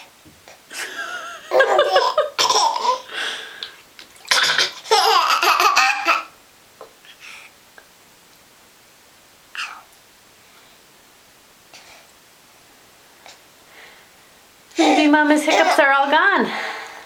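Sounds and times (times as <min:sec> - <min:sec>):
baby giggling: 0:00.7 - 0:03.1, 0:04.3 - 0:06.3, 0:14.8 - 0:16.1.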